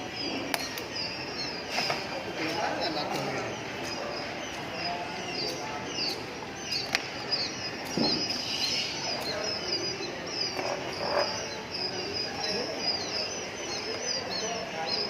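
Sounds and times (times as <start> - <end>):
small animals chirping: 0.0 - 15.0.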